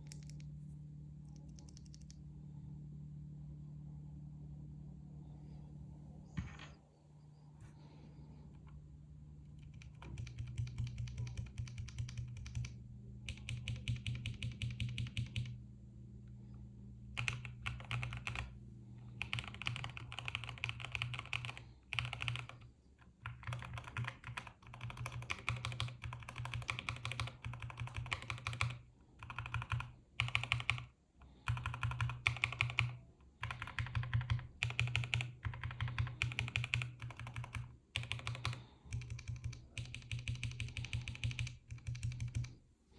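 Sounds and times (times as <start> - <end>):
steady low hum: 0.0 - 42.9
mechanical keyboard typing: 9.6 - 15.6, 17.2 - 18.5, 19.2 - 42.5.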